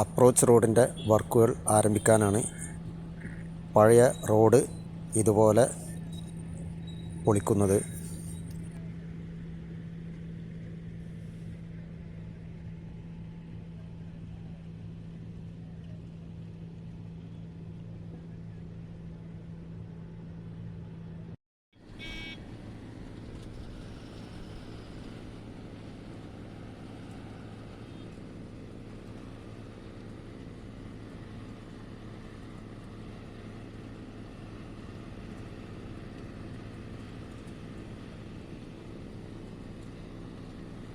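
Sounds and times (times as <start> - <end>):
milling machine droning: 0.0 - 8.8.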